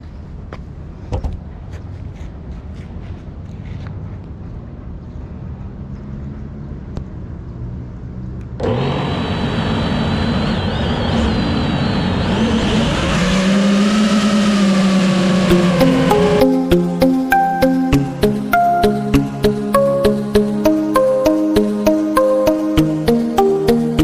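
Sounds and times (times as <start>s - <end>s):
quadcopter motors whining: 8.5s - 16.8s.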